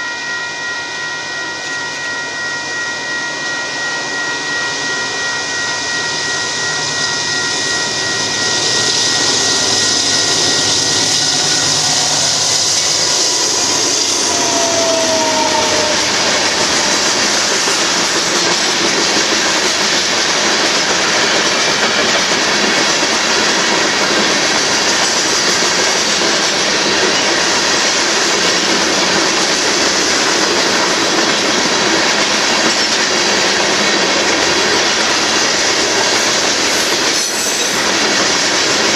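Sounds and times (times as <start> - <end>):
steady tonal whine: 0.0 - 26.2
train wheels on rails: 0.0 - 38.9
short falling squeal: 0.1 - 18.6.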